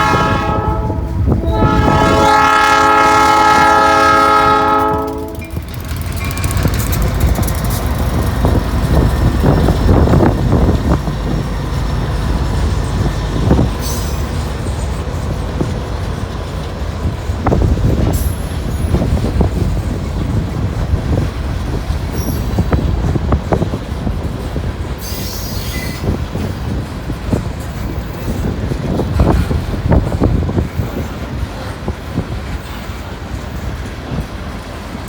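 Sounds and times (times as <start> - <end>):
wheel clacks over rail joints: 4.6 - 35.0
high wheel squeals: 22.1 - 22.8, 25.0 - 26.2.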